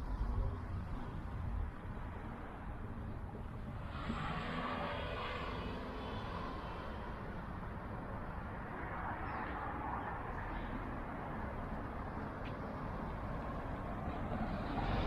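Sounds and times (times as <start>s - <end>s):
passing road vehicle engine: 3.3s - 15.0s.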